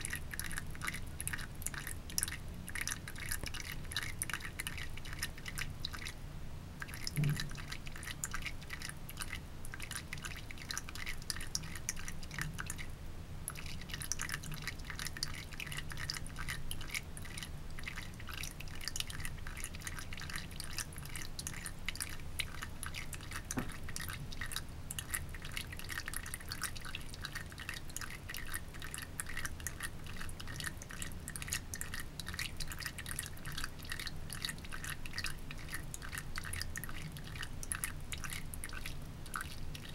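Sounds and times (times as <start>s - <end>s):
water trickling into a sink: 0.0s - 6.2s, 6.8s - 39.9s.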